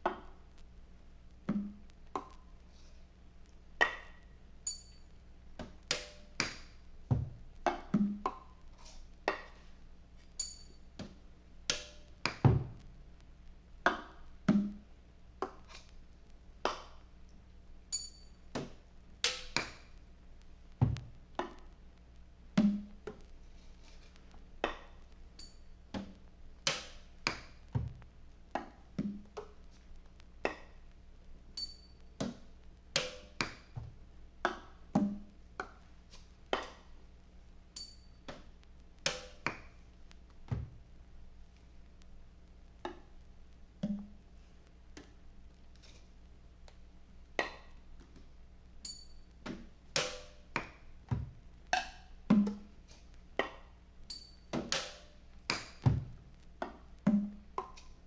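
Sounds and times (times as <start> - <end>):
faint low hum: 0.0 - 58.0.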